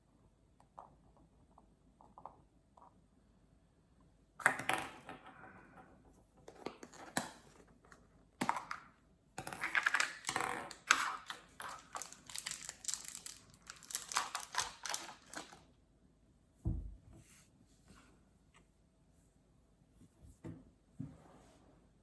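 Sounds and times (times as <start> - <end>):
plastic packaging crinkling: 10.8 - 15.6.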